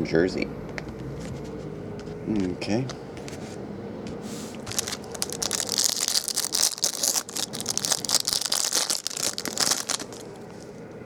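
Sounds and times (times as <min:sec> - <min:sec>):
plastic wrapper crinkling: 0:04.6 - 0:10.7.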